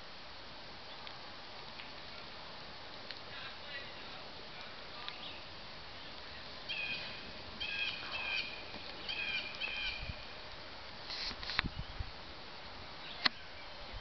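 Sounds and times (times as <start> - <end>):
steady outdoor hiss: 0.0 - 14.0
songbird calling: 5.0 - 10.3, 12.8 - 14.0.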